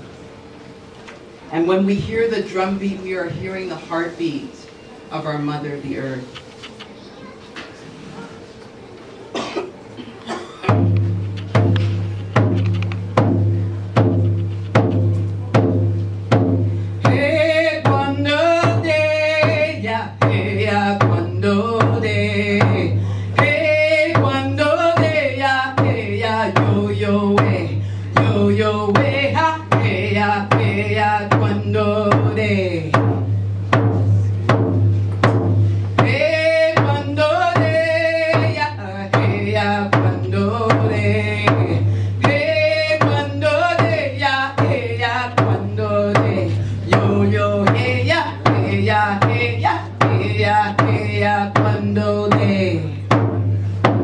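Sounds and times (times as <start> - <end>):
steady drum beat: 10.6 - 54.0
person singing: 36.0 - 53.0.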